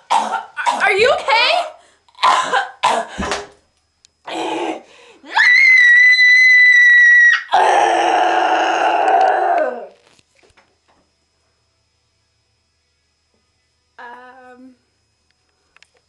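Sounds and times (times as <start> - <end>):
girl screaming: 5.3 - 9.9.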